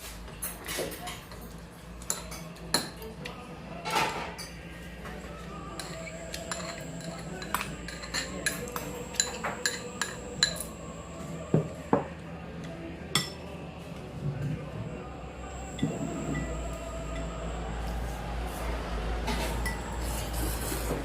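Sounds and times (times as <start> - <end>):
cutlery and dishes clinking: 5.8 - 11.1
low hum: 13.9 - 21.0.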